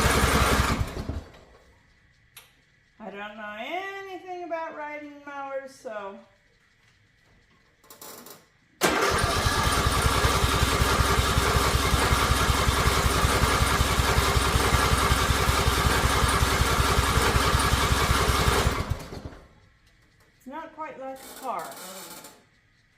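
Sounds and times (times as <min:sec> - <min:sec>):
lawn mower engine cranking: 0:00.0 - 0:01.6, 0:07.8 - 0:20.2.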